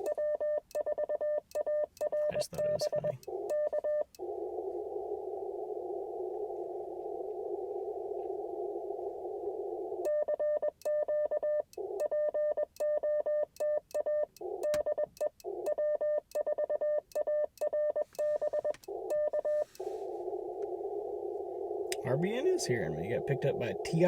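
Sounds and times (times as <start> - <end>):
morse code tone: 0.0 - 4.1
receiver hiss: 2.3 - 10.1, 18.0 - 24.0.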